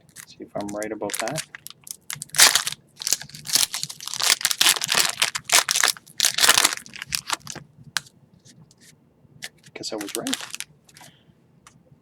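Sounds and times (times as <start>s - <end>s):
foil wrapper crinkling and tearing: 0.0s - 7.6s, 9.4s - 11.1s.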